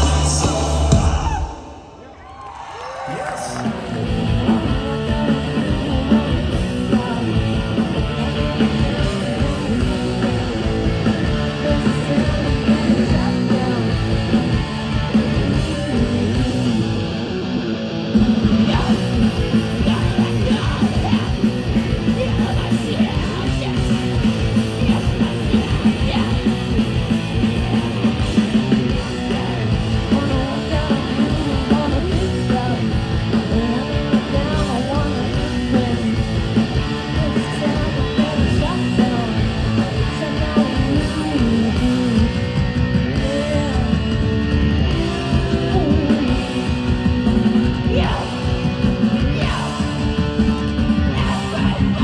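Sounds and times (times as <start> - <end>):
distorted electric guitars: 0.0 - 2.0, 2.8 - 52.0
person singing and yelling: 0.0 - 2.1, 18.6 - 28.1, 29.0 - 42.4, 47.6 - 52.0.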